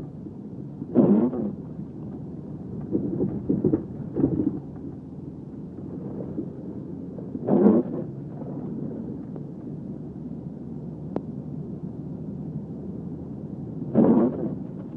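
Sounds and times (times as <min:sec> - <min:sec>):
car cabin rumble driving through snow: 0:00.0 - 0:14.9.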